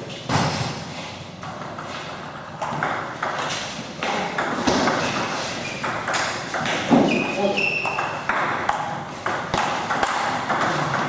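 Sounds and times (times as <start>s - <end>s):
table tennis ball pocks: 0.3s - 11.0s.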